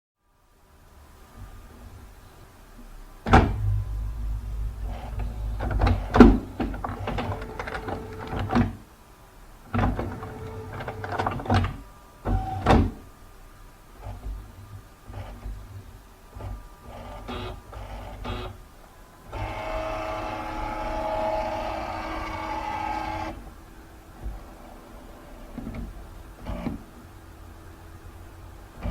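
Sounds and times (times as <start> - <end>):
scanner motor humming: 3.4 - 8.5, 19.4 - 23.4.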